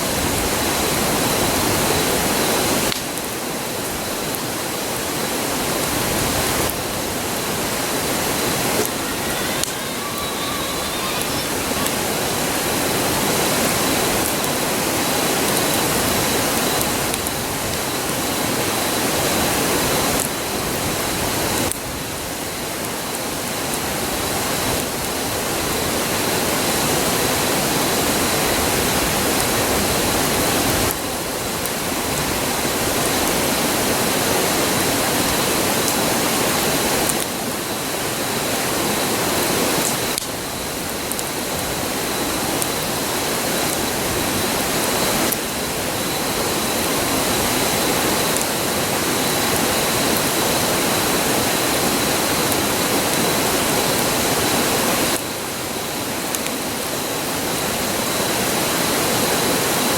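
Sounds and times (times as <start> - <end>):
river rushing: 0.0 - 21.7
campfire crackling: 0.1 - 26.7, 28.1 - 58.7.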